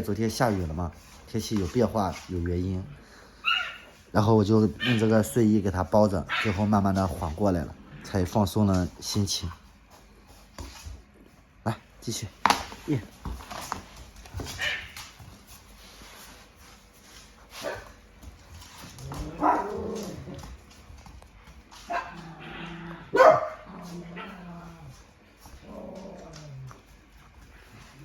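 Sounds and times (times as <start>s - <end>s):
dog barking: 3.4s - 3.8s, 4.8s - 5.1s, 6.3s - 6.6s, 19.4s - 19.8s, 23.1s - 23.6s.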